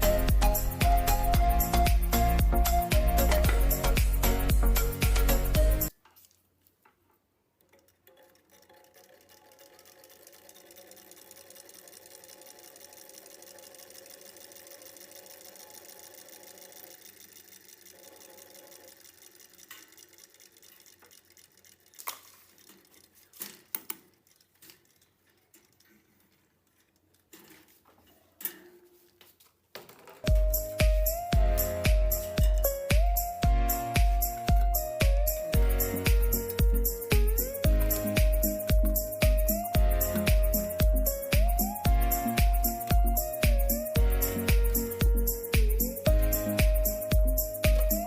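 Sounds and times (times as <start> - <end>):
small electric motor ticking: 7.7 - 25.0, 30.3 - 48.0.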